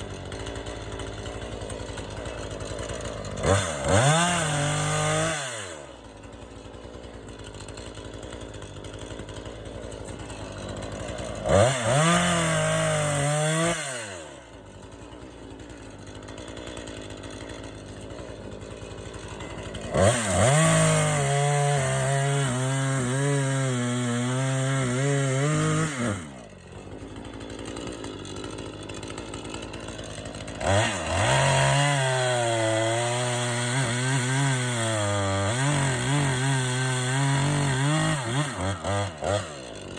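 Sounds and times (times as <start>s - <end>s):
chainsaw cutting log: 0.0s - 39.9s
chainsaw idling and revving: 0.0s - 39.9s.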